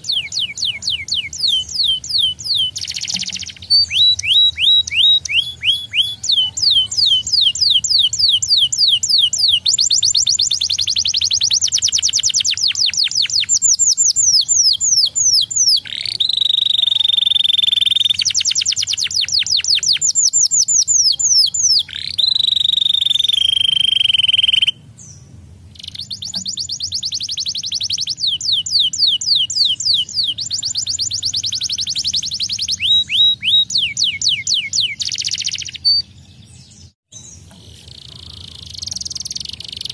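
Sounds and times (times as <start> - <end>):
canary singing trills: 0.0 - 39.9
canary long held whistle: 7.4 - 21.1.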